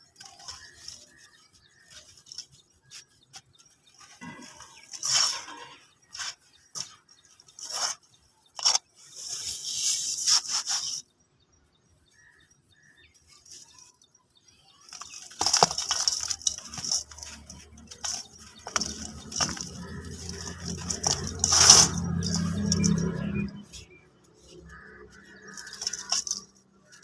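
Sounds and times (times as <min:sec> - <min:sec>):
dry material crumbling: 0:14.8 - 0:23.8, 0:24.6 - 0:27.0.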